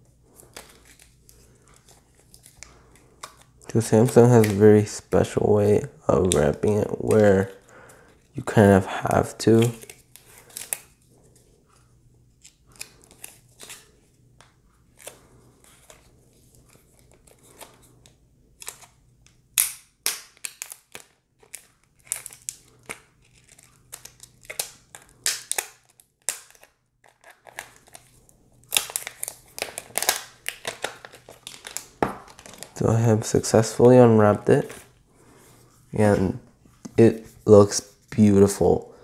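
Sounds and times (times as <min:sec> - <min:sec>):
plastic wrapping crinkling and tearing: 0:20.2 - 0:33.0.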